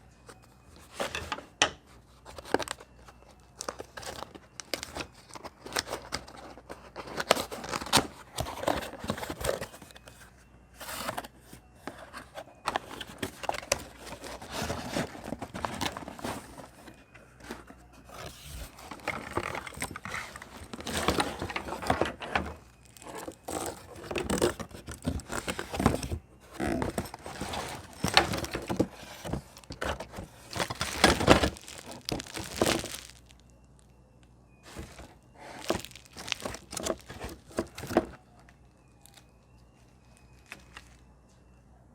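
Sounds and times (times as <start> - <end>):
packaging crinkling and tearing: 2.2 - 10.2, 10.8 - 33.6, 34.6 - 38.2.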